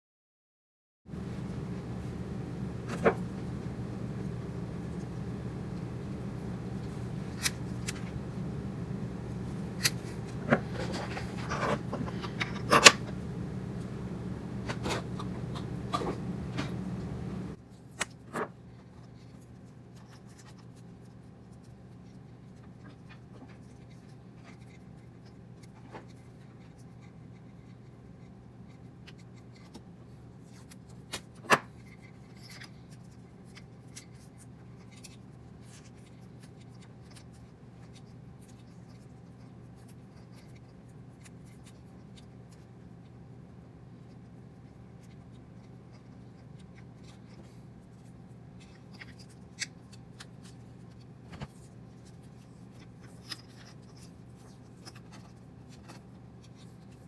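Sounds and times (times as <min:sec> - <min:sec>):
steady low hum: 0:01.1 - 0:17.6.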